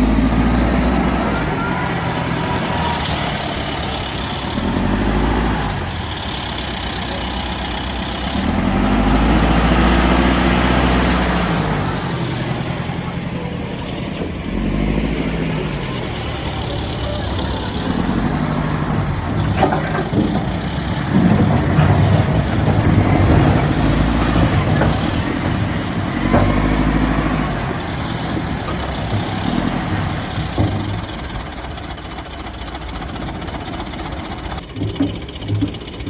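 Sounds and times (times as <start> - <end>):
heavy machine engine running: 0.0 - 36.0
metallic knocks and clanks: 34.6 - 36.0.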